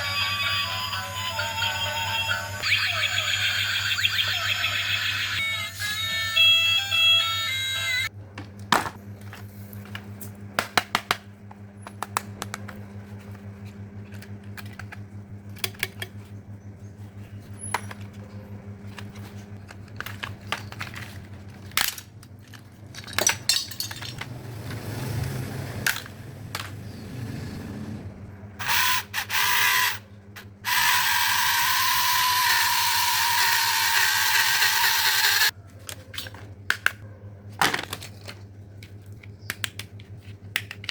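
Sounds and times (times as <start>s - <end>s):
steady low hum: 3.2s - 24.4s
hard toys clicking and clattering: 18.9s - 24.4s
loud steady whir: 24.2s - 35.6s.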